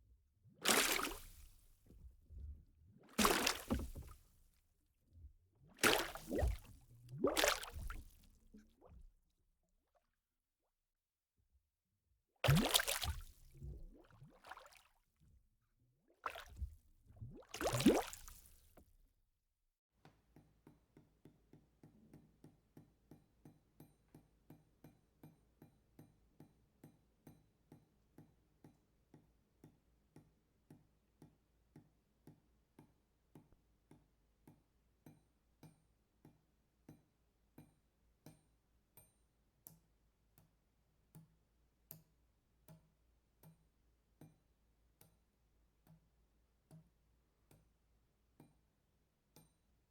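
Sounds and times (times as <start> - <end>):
water drops dripping: 0.6 - 1.4, 3.2 - 4.1, 5.8 - 8.2, 12.5 - 13.3, 17.3 - 18.4.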